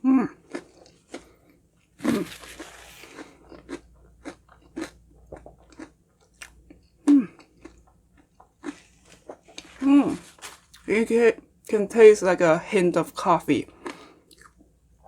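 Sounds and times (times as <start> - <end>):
crunching and chewing: 0.3 - 10.9, 13.7 - 14.7
person making mm sound: 2.0 - 3.0.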